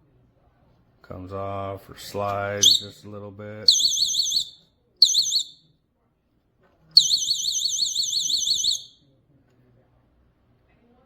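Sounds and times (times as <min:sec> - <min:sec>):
electronic alarm warbling: 0:02.6 - 0:02.8, 0:03.7 - 0:05.5, 0:07.0 - 0:08.9.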